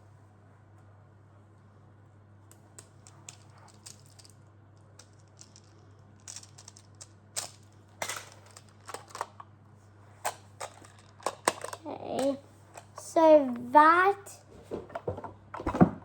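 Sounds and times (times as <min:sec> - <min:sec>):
plastic tiles clicking and clacking: 0:05.0 - 0:09.4, 0:10.3 - 0:13.0.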